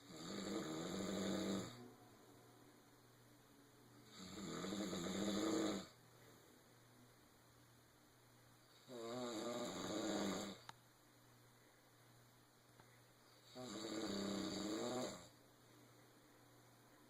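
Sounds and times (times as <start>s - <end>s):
pitched snores: 0.0s - 1.8s, 4.0s - 6.0s, 8.7s - 10.7s, 13.4s - 15.4s.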